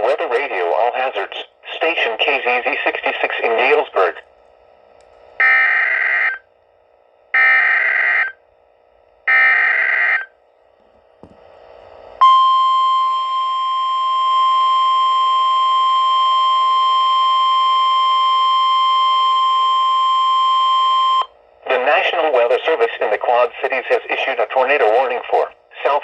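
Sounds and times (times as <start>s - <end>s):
steady warning alarm tone: 5.4s - 6.5s, 7.3s - 8.4s, 9.2s - 10.4s, 12.2s - 24.0s.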